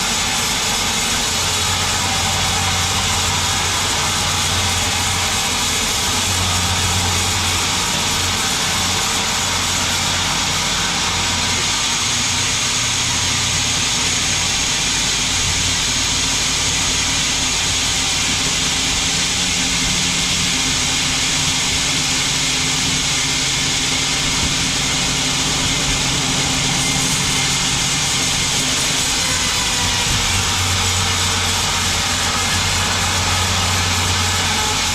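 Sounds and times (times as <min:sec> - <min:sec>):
band saw hiss: 0:00.0 - 0:34.9
low motor hum: 0:00.0 - 0:34.9.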